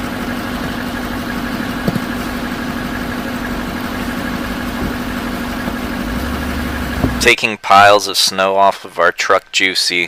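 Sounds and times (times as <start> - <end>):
truck engine running: 0.0 - 7.6
short knock: 1.9 - 2.1.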